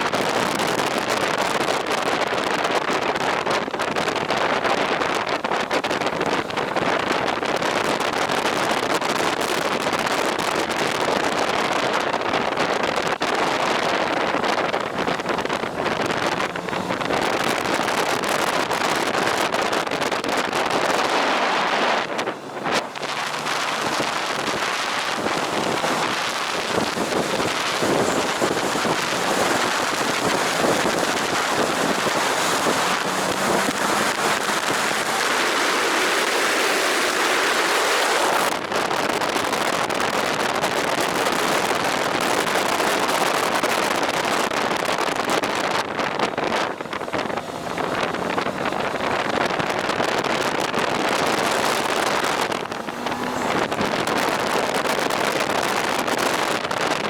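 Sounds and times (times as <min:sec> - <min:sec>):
wind rushing over microphone: 0:00.0 - 0:57.0.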